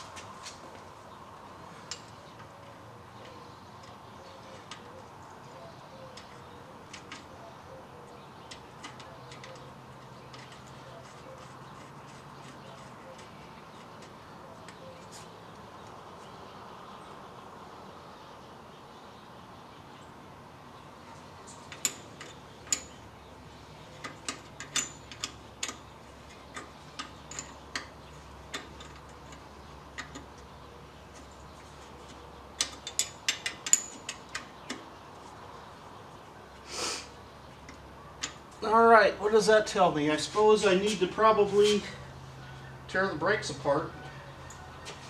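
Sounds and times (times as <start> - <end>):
hand tools clicking and tapping: 1.9 - 5.1, 6.1 - 7.4, 8.4 - 16.0, 21.7 - 23.1, 23.9 - 30.5, 31.1 - 34.9, 37.5 - 38.6
short hiss: 36.6 - 37.2.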